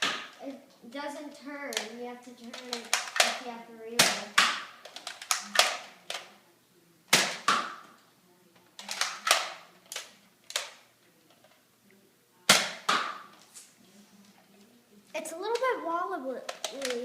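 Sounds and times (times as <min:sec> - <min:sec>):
dart blaster snaps and clacks: 0:02.5 - 0:03.4.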